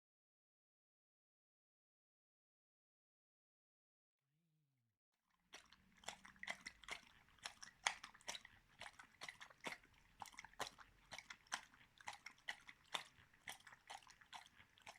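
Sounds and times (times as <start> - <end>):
dog chewing and crunching: 5.6 - 14.9.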